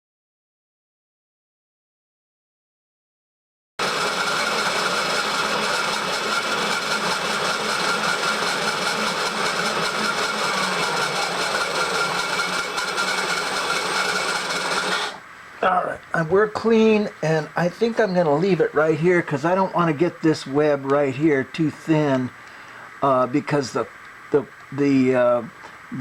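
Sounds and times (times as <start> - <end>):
milling machine cutting metal: 3.8 - 15.2
person speaking: 15.6 - 22.3.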